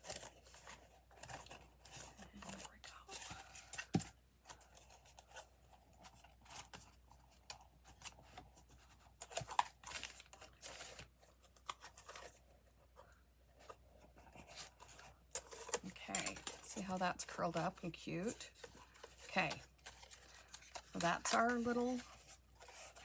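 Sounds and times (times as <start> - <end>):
paper rustling and scraping: 0.0 - 23.0.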